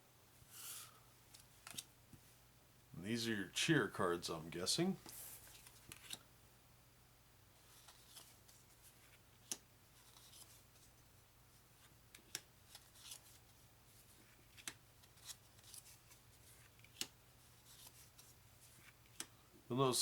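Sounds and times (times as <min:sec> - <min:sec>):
cards rustling: 0:05.0 - 0:06.2, 0:07.6 - 0:09.2, 0:10.0 - 0:10.9, 0:11.8 - 0:19.4.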